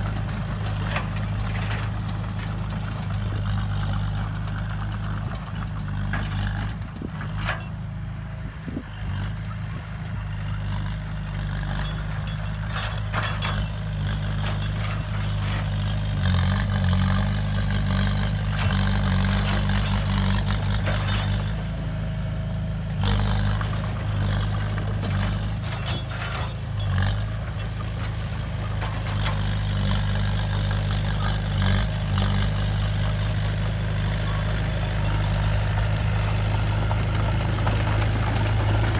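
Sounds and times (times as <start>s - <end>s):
heavy diesel engine running: 0.0s - 38.9s
knocks and clatter: 11.4s - 21.8s, 23.0s - 31.9s, 35.2s - 38.9s.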